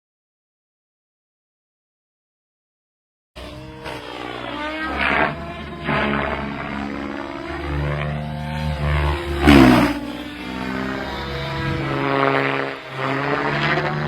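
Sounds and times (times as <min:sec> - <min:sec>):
model helicopter motor and rotor whine: 0:03.4 - 0:14.0.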